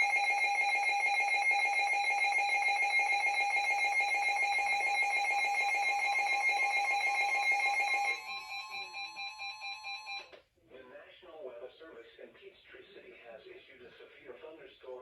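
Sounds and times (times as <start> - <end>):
two-tone alarm: 0.0 - 10.3.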